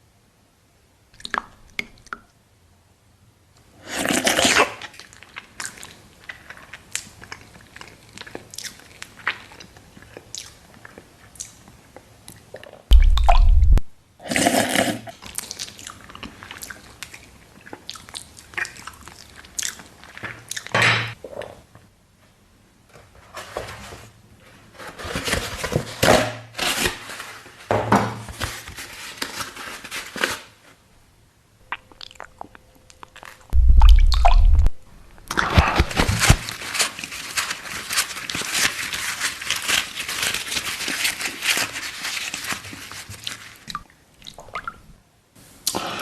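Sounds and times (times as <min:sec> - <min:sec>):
chewing and crunching food: 0:03.8 - 0:21.6, 0:31.7 - 0:34.7.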